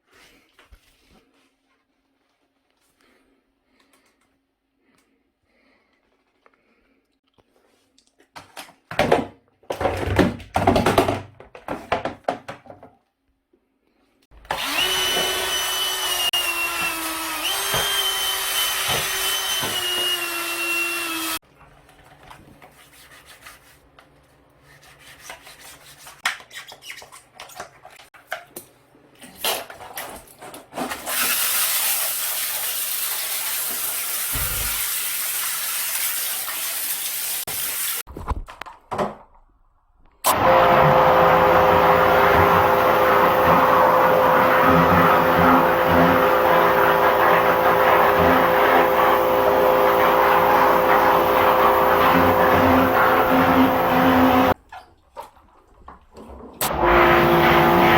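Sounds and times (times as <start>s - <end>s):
power tool motor whining: 14.5s - 21.4s, 40.3s - 54.6s, 56.6s - 57.9s.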